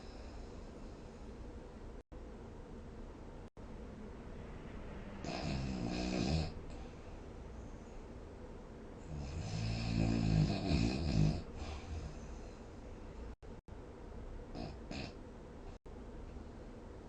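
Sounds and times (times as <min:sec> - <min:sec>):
person snoring: 0:05.2 - 0:07.0, 0:09.0 - 0:12.4.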